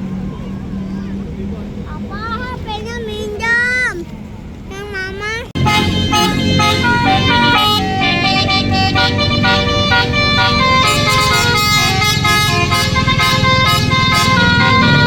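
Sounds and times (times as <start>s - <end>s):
bus musical horn melody: 5.6s - 15.0s.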